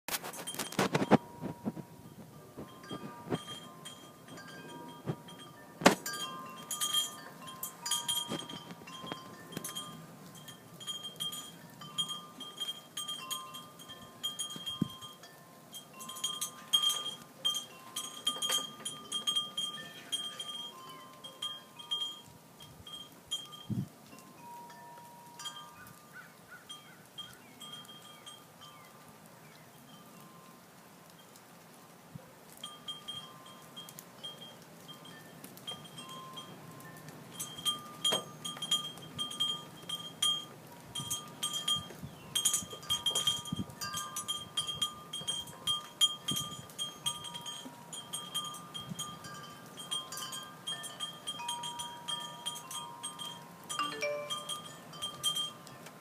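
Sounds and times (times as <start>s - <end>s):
chimes ringing: 0.3s - 22.2s, 48.4s - 55.6s.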